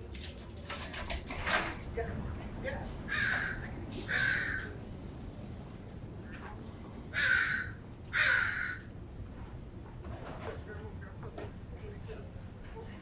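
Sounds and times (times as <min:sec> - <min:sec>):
crow cawing: 0:03.1 - 0:04.8, 0:07.1 - 0:08.9.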